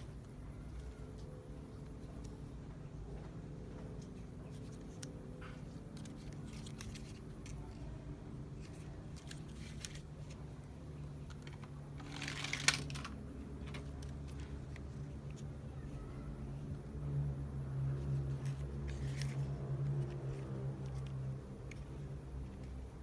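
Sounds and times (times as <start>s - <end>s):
plastic toy vehicles clicking: 4.5s - 7.9s, 8.6s - 10.4s, 11.2s - 15.5s.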